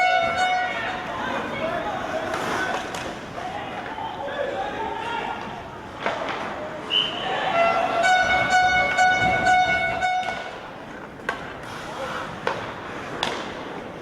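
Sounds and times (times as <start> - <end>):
goal horn blast: 0.0 - 0.8, 6.9 - 10.6.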